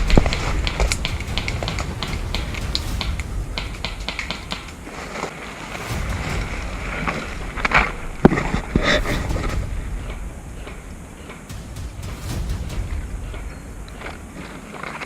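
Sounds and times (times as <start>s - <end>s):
small irregular clicks and snaps: 0.0s - 4.8s
low microphone rumble: 0.0s - 15.0s.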